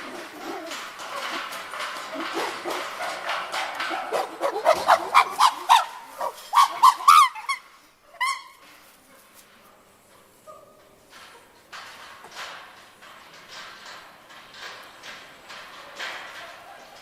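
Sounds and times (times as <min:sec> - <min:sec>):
chimpanzees screaming and hooting: 0:03.9 - 0:08.6.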